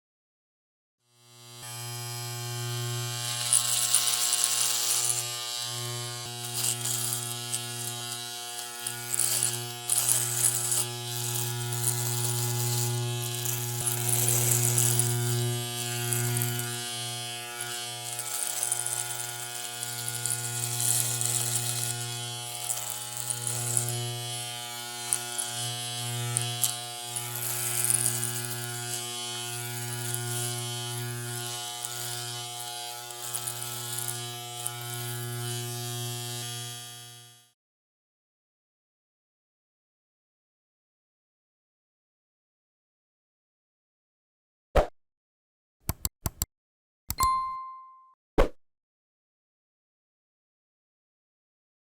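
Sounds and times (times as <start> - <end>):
blades cutting hair: 1.1 - 37.6
electric hair clipper buzzing: 1.1 - 37.6.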